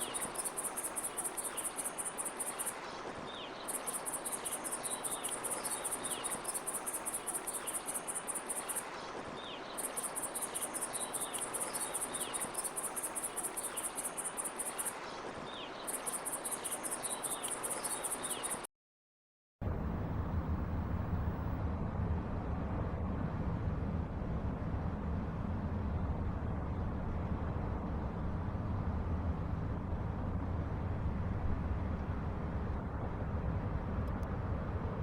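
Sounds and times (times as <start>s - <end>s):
crickets chirping: 0.0s - 15.2s, 15.8s - 18.7s
steady background hiss: 0.0s - 18.6s.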